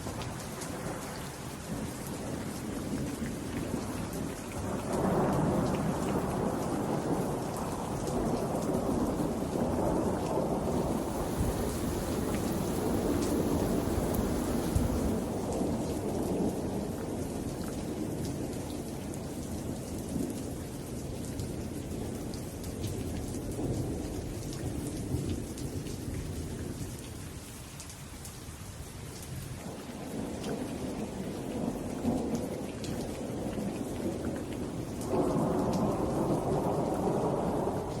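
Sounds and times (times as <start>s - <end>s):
rain falling: 0.0s - 38.0s
rolling thunder rumble: 5.0s - 17.3s.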